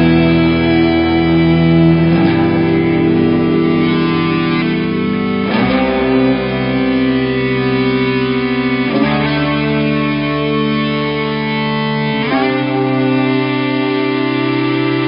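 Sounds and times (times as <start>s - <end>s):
guitar background music: 0.0s - 15.0s.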